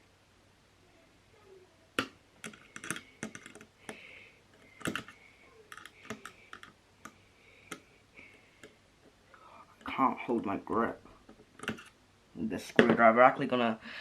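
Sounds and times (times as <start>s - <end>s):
screwdriver clicking and scraping: 2.4s - 3.7s, 4.6s - 6.8s, 11.3s - 11.9s.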